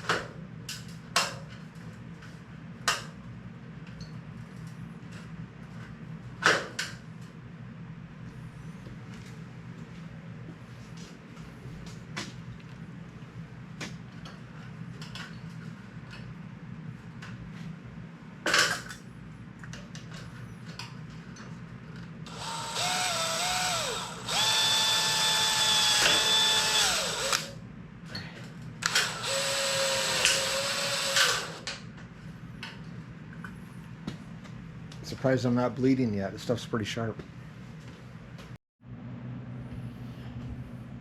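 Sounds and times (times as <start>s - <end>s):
power drill driving screws: 22.3s - 27.6s, 28.8s - 31.7s.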